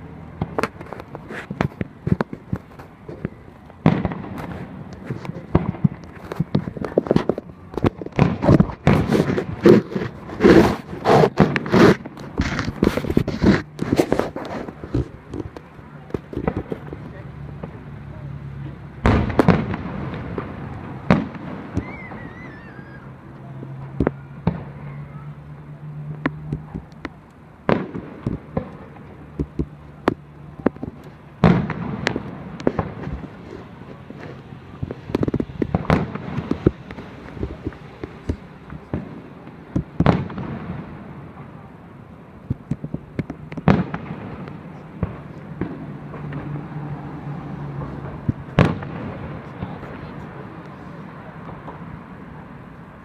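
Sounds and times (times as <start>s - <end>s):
firework pops and crackles: 0.0s - 53.0s
fireworks bursting with loud bangs: 0.0s - 53.0s
warbling firework whistle: 21.6s - 23.3s.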